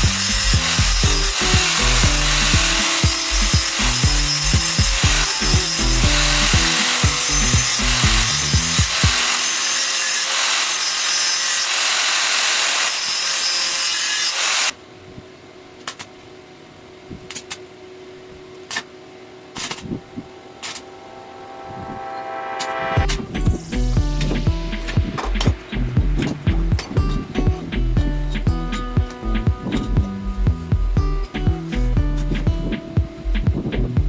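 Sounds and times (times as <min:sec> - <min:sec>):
background music: 0:00.0 - 0:09.7, 0:20.1 - 0:34.0
power tool grinding: 0:00.0 - 0:14.8.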